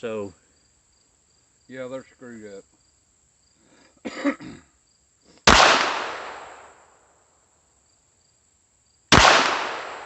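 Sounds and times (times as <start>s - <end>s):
insects chirping: 0.0s - 10.0s
pistol shot: 5.4s - 6.8s, 9.1s - 10.0s.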